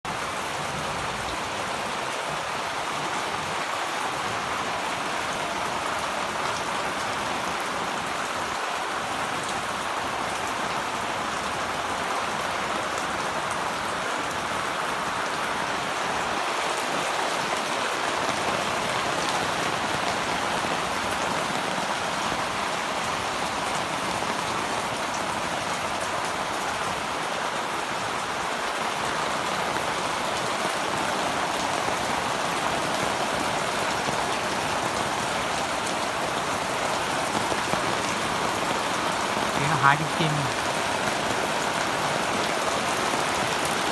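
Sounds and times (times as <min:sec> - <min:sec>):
heavy rain pouring: 0:00.1 - 0:43.9.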